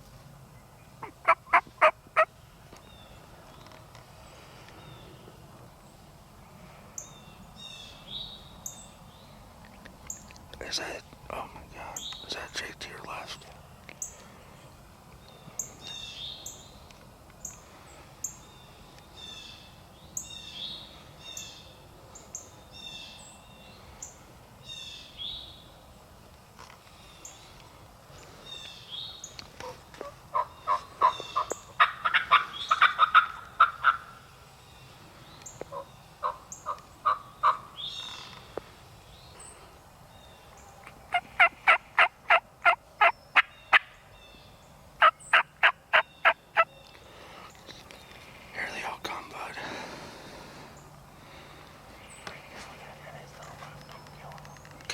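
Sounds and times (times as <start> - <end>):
turkeys yelping: 1.0 - 2.3, 29.6 - 34.2, 35.6 - 37.7, 41.1 - 43.9, 45.0 - 46.7.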